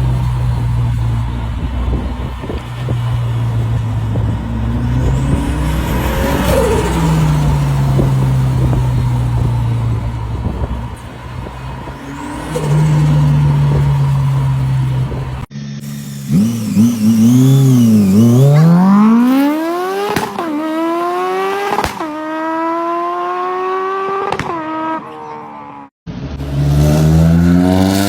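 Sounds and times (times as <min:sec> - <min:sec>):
car engine running steadily: 0:00.0 - 0:18.6
car passing close: 0:00.0 - 0:28.0.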